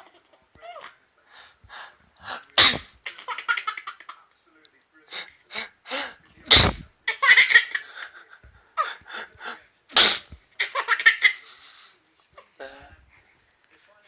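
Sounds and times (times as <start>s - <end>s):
man fake sneezing: 2.2s - 3.0s, 5.2s - 6.9s, 10.0s - 10.4s.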